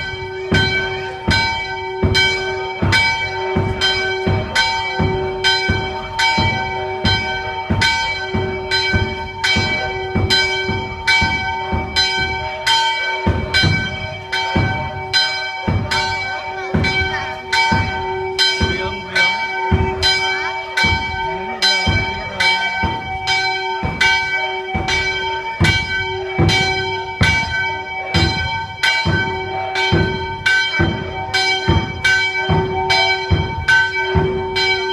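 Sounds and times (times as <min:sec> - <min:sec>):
church bells ringing: 0:00.0 - 0:34.9.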